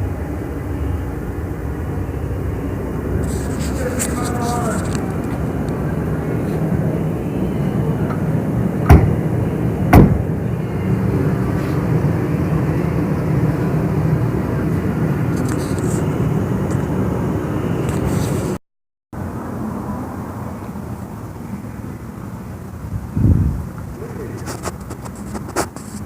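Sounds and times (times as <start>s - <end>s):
low mechanical rumble: 0.0s - 18.6s
sharp knocks: 8.8s - 9.2s, 9.9s - 10.2s.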